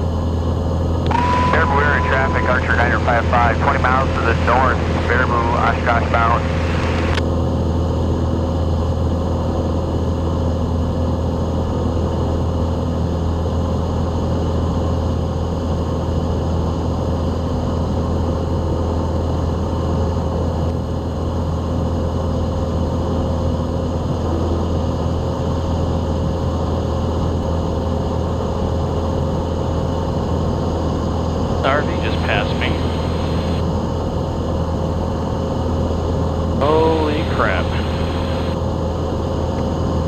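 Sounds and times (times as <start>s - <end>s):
propeller plane engine droning: 0.0s - 40.0s
steady hum: 0.9s - 7.2s, 31.0s - 39.0s.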